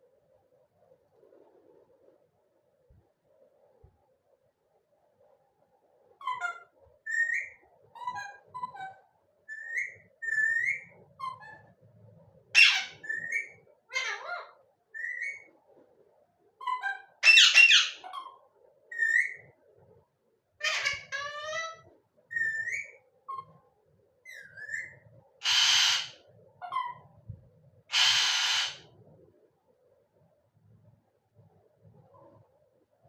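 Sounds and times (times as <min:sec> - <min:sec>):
parrot harsh calls: 0:12.6 - 0:15.5, 0:16.6 - 0:18.4, 0:20.6 - 0:23.5, 0:24.3 - 0:27.0, 0:27.9 - 0:28.9.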